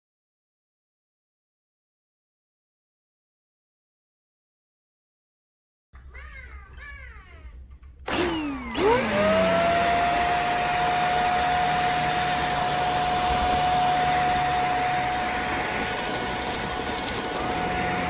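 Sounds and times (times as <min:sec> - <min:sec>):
handheld vacuum cleaner whining: 0:08.1 - 0:18.0.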